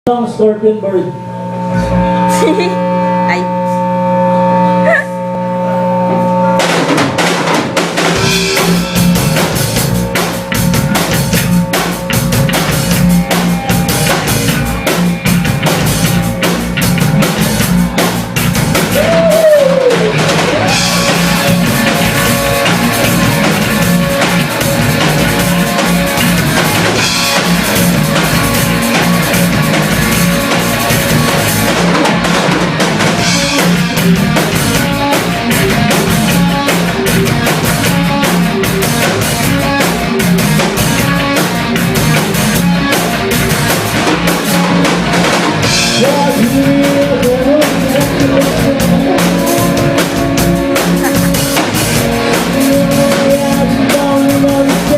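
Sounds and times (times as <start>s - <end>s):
drum kit driving beat: 0.1s - 3.8s, 4.6s - 54.9s
loud rock music: 0.1s - 54.9s.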